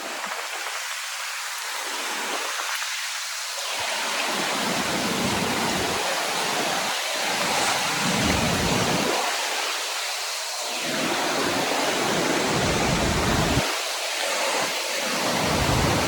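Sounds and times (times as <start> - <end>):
waterfall roaring: 3.6 - 16.0.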